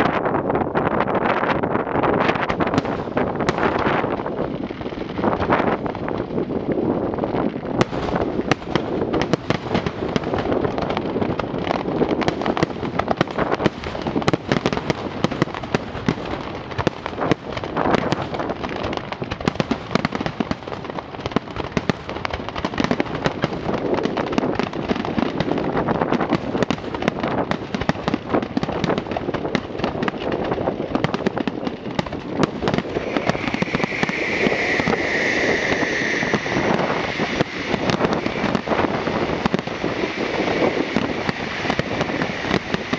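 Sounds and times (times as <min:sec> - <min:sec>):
fireworks bangs and crackling: 0:00.0 - 0:42.9
high-pitched fireworks hissing: 0:01.6 - 0:42.9.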